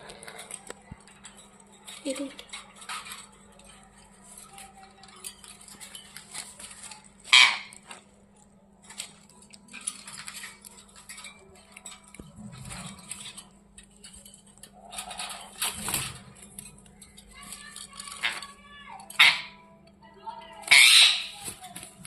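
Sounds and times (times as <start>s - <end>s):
clinking and scratching at cage: 0.0s - 22.0s
parakeet squawk: 7.3s - 7.8s, 19.2s - 19.7s, 20.6s - 21.4s.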